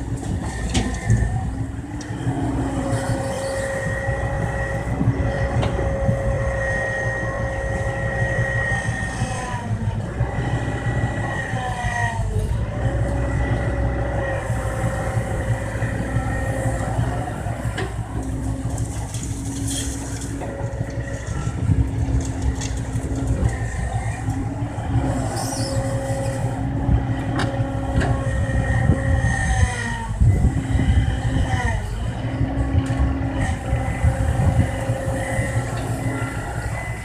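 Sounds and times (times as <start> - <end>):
excavator diesel engine: 0.0 - 37.0
hydraulic whine: 0.0 - 37.0.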